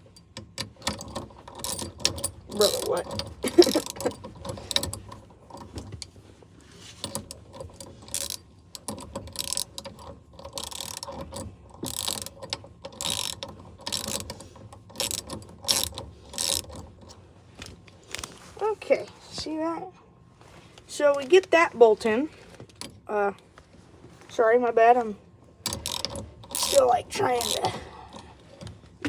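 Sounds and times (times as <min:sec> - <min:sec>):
ratchet wrench clicking: 0:00.0 - 0:05.2, 0:07.0 - 0:16.9, 0:25.6 - 0:28.8.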